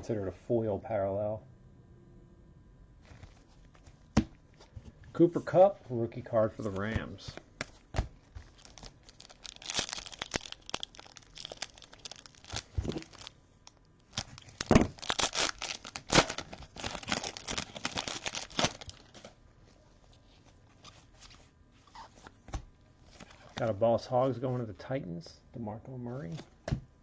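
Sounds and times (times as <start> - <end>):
wrapper tearing and crinkling: 7.6 - 19.4.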